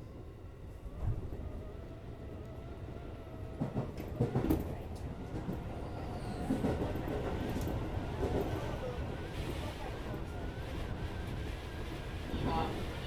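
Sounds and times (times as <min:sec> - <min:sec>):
train rumble inside car: 0:03.3 - 0:13.0.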